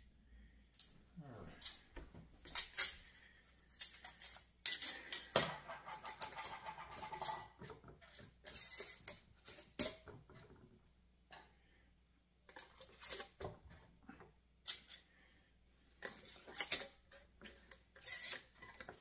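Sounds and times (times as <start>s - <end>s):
rasping scrape: 4.0s - 9.8s, 16.0s - 19.0s.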